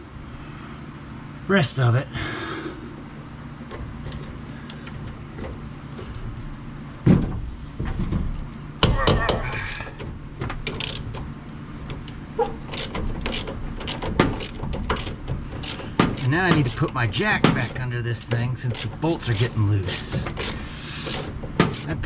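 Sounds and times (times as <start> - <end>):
steady low hum: 0.0 - 22.0
wrench knocking and clanking: 8.8 - 22.0.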